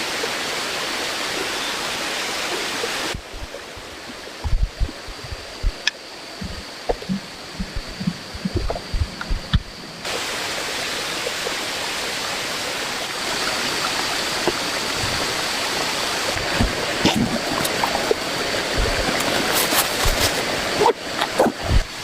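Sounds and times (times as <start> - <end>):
running water rushing: 0.0 - 22.0.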